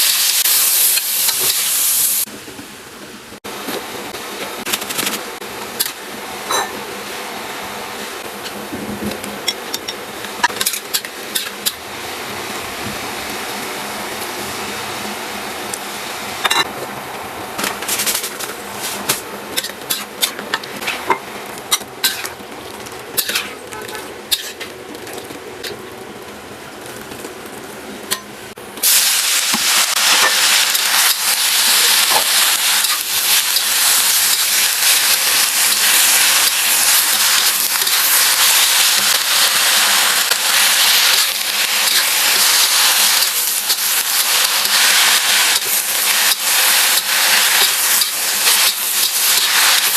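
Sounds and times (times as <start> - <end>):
food frying sizzle: 0.0 - 49.9
stir-frying clatter: 4.4 - 6.9, 8.3 - 11.8, 17.6 - 25.9, 26.8 - 49.9.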